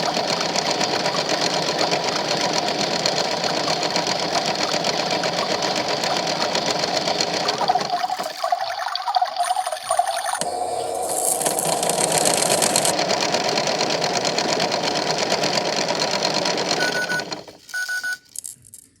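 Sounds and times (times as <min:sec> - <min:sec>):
toy washing machine motor rattling: 0:00.0 - 0:18.2
short beeps: 0:16.8 - 0:18.3.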